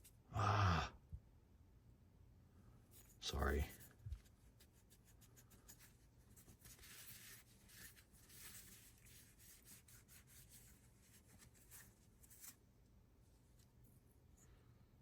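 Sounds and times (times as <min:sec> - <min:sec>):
faint rubbing and scratching: 0:02.9 - 0:14.7.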